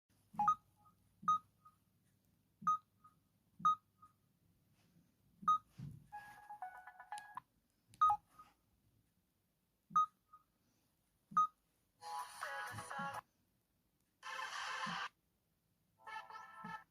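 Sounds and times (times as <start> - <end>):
phone ringtone: 6.2 - 7.4.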